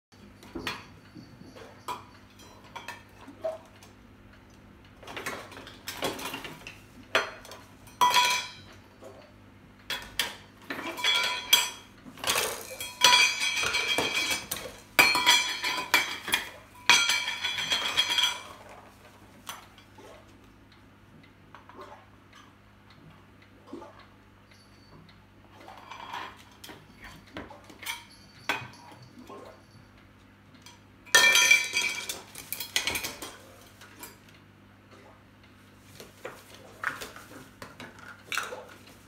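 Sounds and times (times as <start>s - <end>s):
metal toys clattering: 10.7s - 18.7s.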